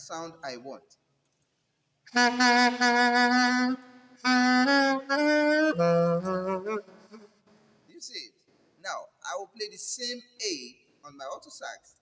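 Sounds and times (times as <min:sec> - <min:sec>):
saxophone notes: 0:02.1 - 0:07.4.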